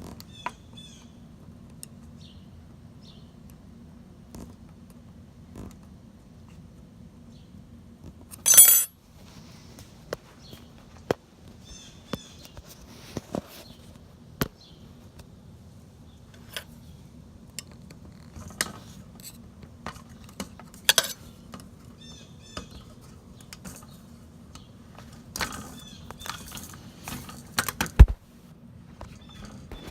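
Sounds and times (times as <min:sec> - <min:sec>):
sharp clicks and knocks: 0:28.0 - 0:28.2.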